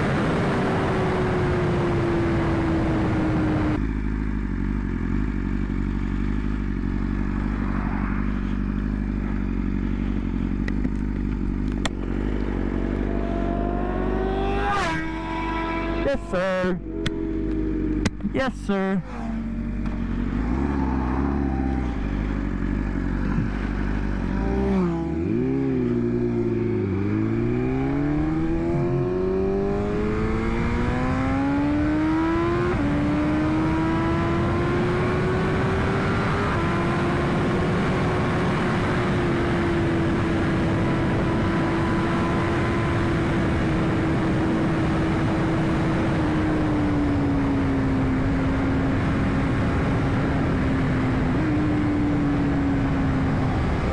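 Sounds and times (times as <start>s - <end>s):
motorcycle engine accelerating: 0.0s - 53.9s
wind and road noise: 0.0s - 53.9s.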